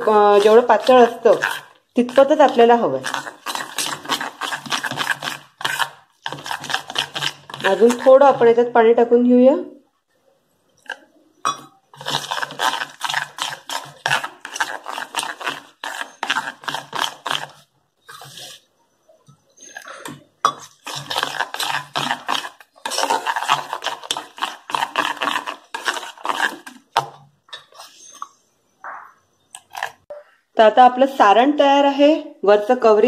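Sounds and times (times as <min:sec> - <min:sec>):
batter beaten in a bowl: 0:00.0 - 0:09.1, 0:10.8 - 0:28.4.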